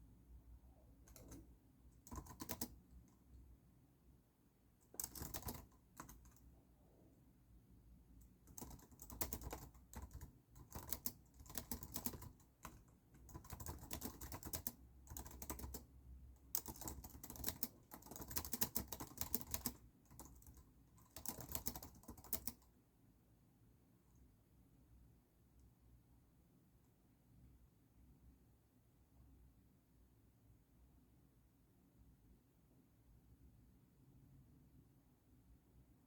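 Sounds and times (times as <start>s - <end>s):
typing on computer keyboard: 1.1s - 2.8s, 4.8s - 6.4s, 8.2s - 22.7s.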